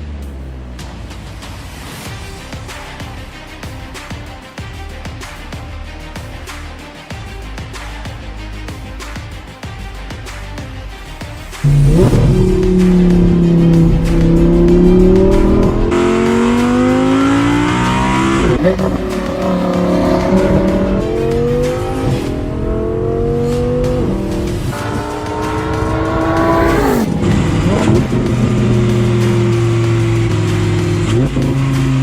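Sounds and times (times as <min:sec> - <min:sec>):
car engine accelerating hard: 0:11.6 - 0:32.0.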